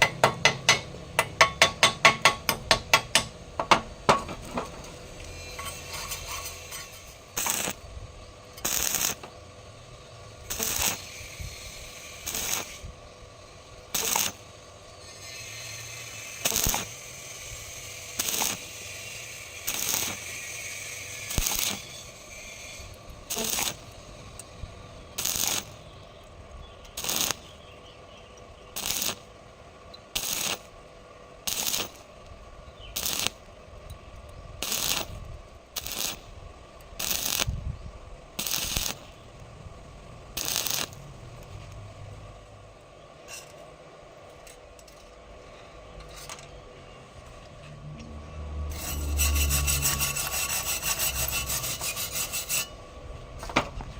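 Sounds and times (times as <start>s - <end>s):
scraping on metal: 4.2s - 7.8s, 48.6s - 52.8s
rattling scrape: 4.4s - 7.7s, 48.6s - 52.8s.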